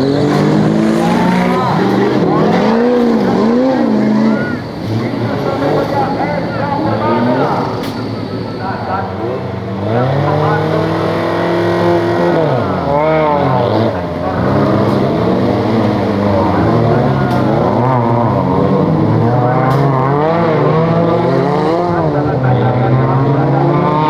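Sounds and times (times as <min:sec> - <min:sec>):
engine revving hard: 0:00.0 - 0:24.0.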